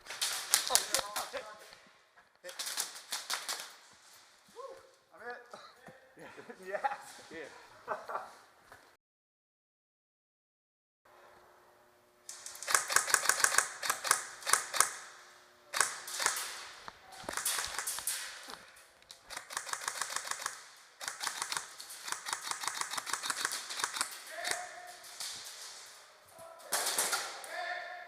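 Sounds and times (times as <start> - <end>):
airsoft guns firing: 0.0 - 1.4, 2.5 - 3.8, 12.3 - 15.1, 15.7 - 18.6, 19.3 - 25.8, 26.7 - 27.5.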